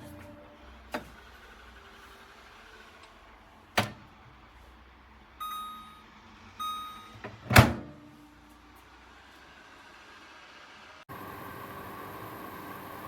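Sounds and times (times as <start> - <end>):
microwave electronic beeps: 5.4 - 7.2.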